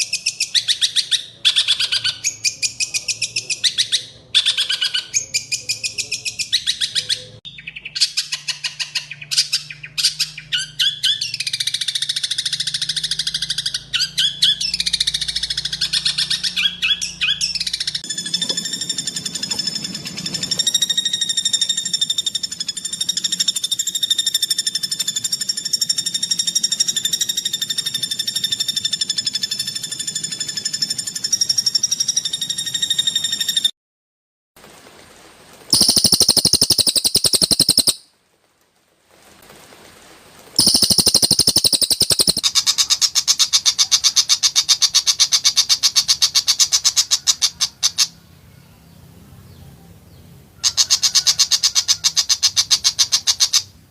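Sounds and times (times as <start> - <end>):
bird song with harsh high notes: 35.7 - 38.0, 40.6 - 42.7.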